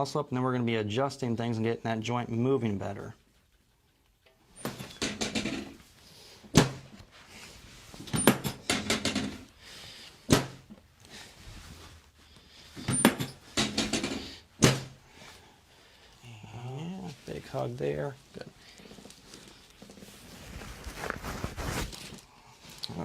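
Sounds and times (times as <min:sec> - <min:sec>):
sharp knocks and thuds: 0:06.5 - 0:07.0, 0:10.3 - 0:10.7, 0:12.8 - 0:15.0.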